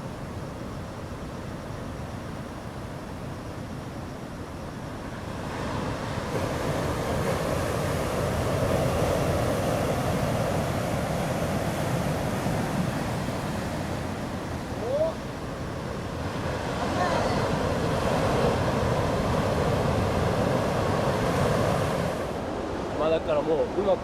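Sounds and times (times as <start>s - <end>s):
ocean surf breaking: 5.0s - 24.0s.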